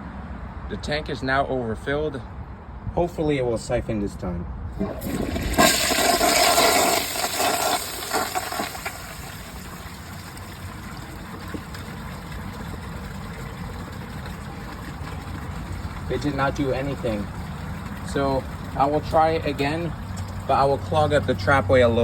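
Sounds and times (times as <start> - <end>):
toilet flushing: 4.8 - 20.8
water running: 4.8 - 21.2.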